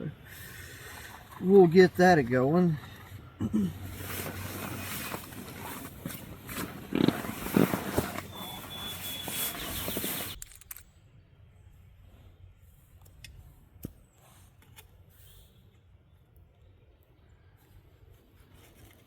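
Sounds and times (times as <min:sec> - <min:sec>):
rustling and handling noises: 0:00.7 - 0:10.9, 0:17.7 - 0:19.0
short low grunts: 0:02.8 - 0:04.3
small clicks: 0:09.2 - 0:11.0.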